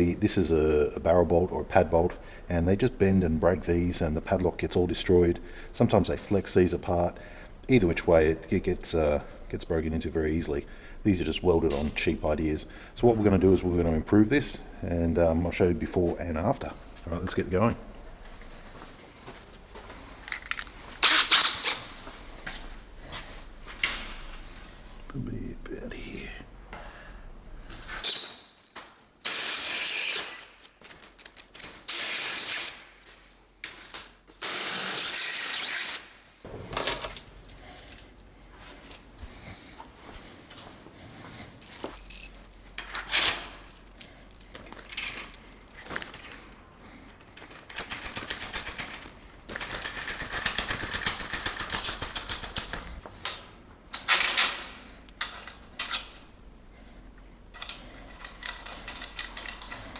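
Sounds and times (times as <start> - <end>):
tools and metal hardware rattling: 19.2 - 22.2, 36.5 - 40.2, 41.0 - 46.6, 47.3 - 56.5, 57.5 - 59.9.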